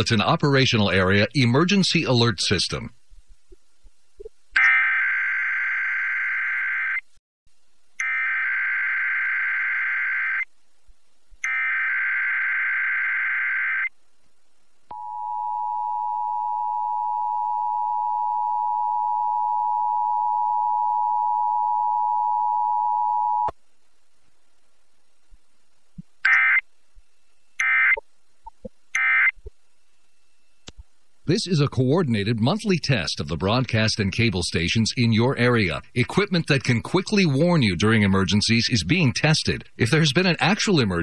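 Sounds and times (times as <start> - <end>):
two-tone attention signal: 14.9 - 23.5.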